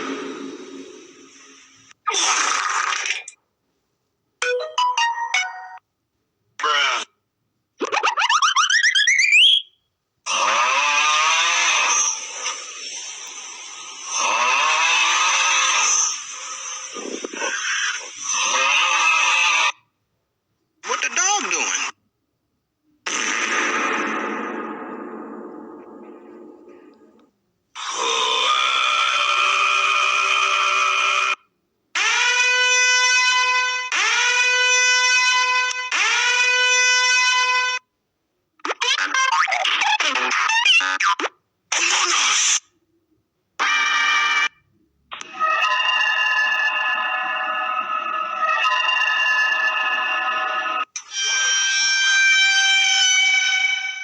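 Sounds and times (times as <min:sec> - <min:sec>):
harsh buzzing pitched sound: 0:23.1 - 0:27.2.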